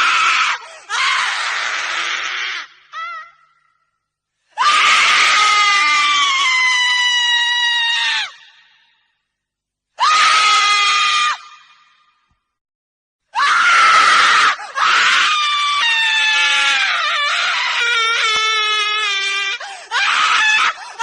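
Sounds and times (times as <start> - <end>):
woman screaming: 4.6 - 8.5, 10.0 - 11.8, 13.4 - 21.0.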